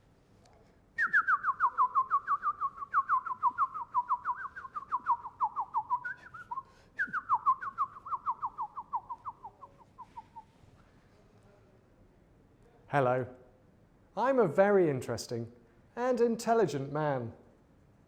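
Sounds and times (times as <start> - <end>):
bird-like whistled call: 1.0 - 10.6.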